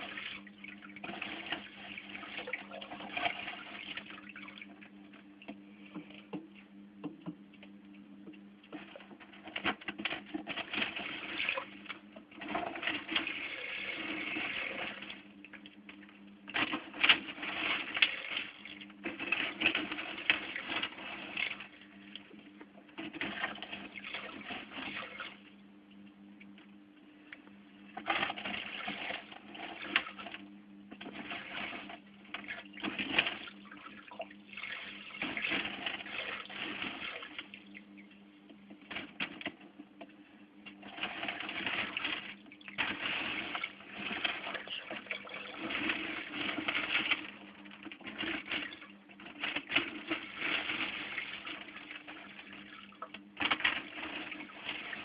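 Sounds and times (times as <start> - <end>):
steady low hum: 0.0 - 55.0
water sloshing in aquarium: 0.0 - 55.0.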